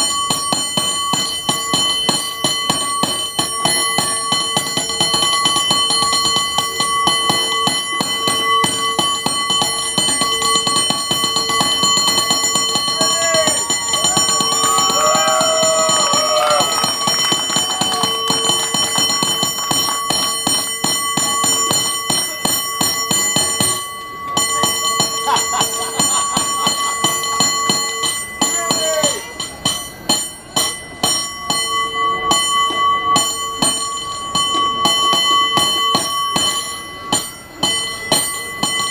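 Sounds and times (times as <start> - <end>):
cable car bell clanging: 0.0 - 38.9
crowd shouting: 12.9 - 18.4.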